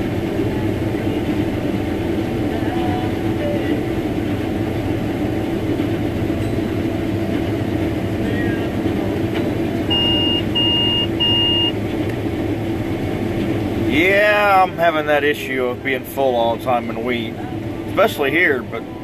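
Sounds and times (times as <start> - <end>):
combine harvester droning: 0.0 - 19.0
short alarm beeps: 9.9 - 11.8.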